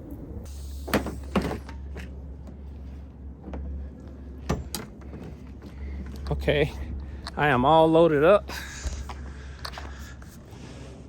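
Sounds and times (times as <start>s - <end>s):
low steady hum: 0.0s - 11.0s
equipment knocks and clanks: 4.4s - 6.2s.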